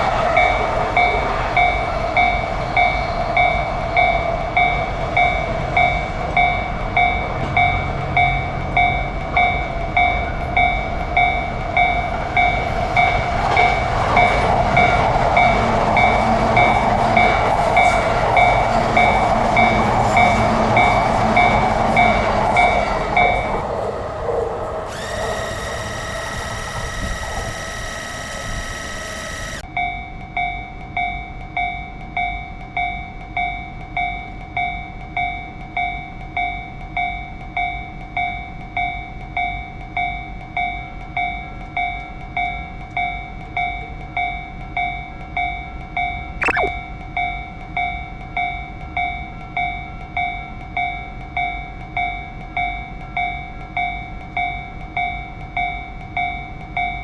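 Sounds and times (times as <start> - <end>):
railroad crossing bell ringing: 0.0 - 14.4
whining sound: 24.9 - 29.6
falling pitch sweep: 46.4 - 46.8.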